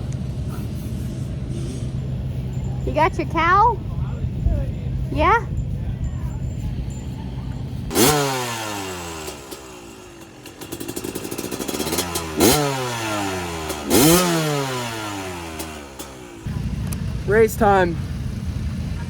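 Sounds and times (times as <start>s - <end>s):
dirt bike engine revving: 5.1s - 19.0s.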